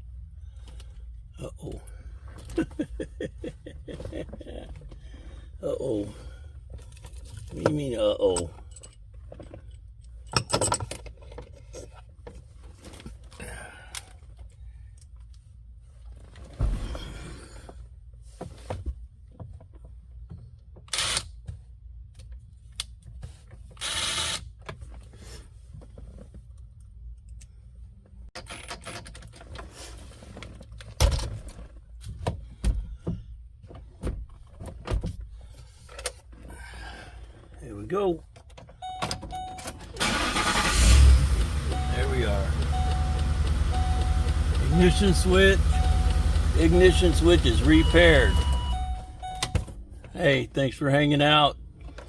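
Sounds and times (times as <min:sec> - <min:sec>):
parts and screws clicking and clunking: 0:06.7 - 0:13.3, 0:28.3 - 0:29.7.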